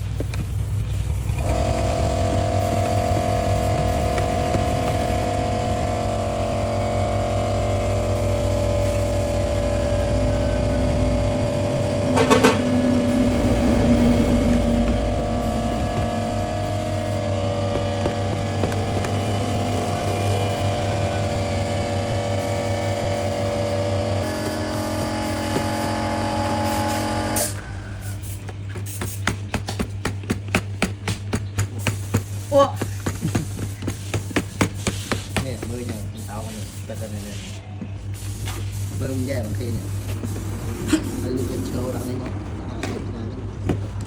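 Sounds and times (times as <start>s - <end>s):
machine motor running: 0.1s - 29.5s, 30.7s - 44.0s
sharp metallic knocks: 10.2s - 20.3s.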